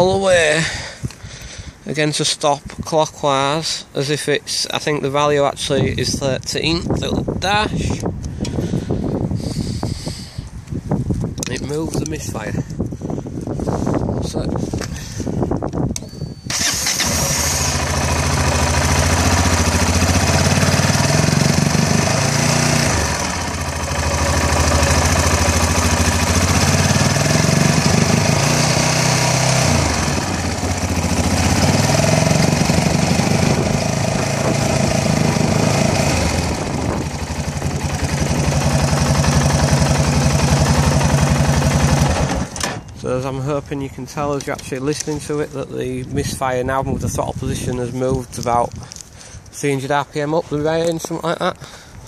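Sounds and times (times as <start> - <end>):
motorcycle engine revving: 16.5 - 42.8.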